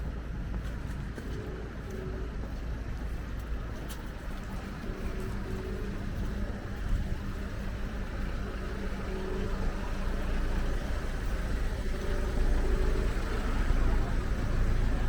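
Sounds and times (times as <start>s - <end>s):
vehicle engine running: 0.0s - 15.0s
wind rumble on microphone: 0.0s - 15.0s.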